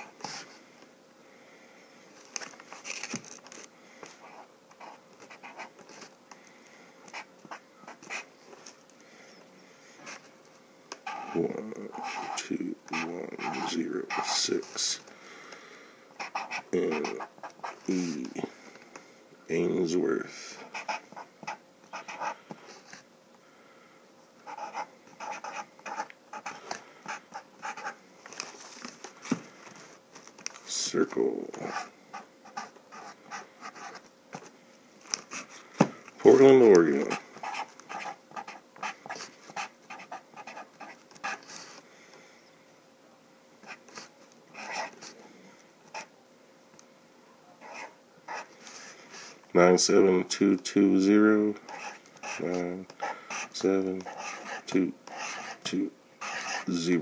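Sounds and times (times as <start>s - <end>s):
pen scratching on cardboard: 11.0s - 14.5s, 16.2s - 17.8s, 20.6s - 22.4s, 24.5s - 28.0s, 31.6s - 34.0s, 36.3s - 41.6s, 43.7s - 45.0s, 47.6s - 48.5s, 51.7s - 56.7s.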